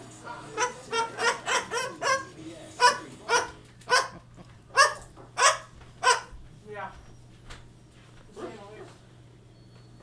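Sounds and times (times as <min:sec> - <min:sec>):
cockatoo mimicking dog barks: 0:00.6 - 0:06.4.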